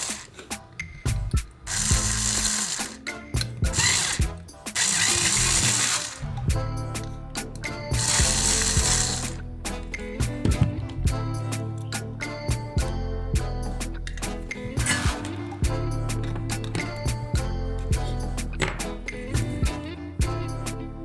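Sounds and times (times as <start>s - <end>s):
tool ratcheting and clicking: 0.0s - 10.1s, 13.8s - 17.2s
background music: 0.0s - 21.0s
sharp clicks: 1.7s - 6.3s.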